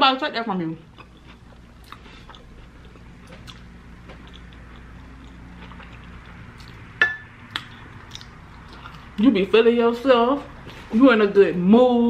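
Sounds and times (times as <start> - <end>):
person chewing: 0.9 - 9.2
wet mouth clicks: 7.5 - 9.1.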